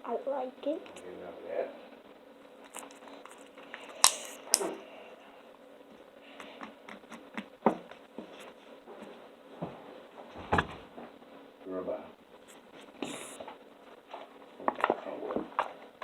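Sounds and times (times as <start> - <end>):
slime crackling and ticking: 2.7 - 4.7, 6.4 - 8.1
slime pops and clicks: 4.0 - 4.7.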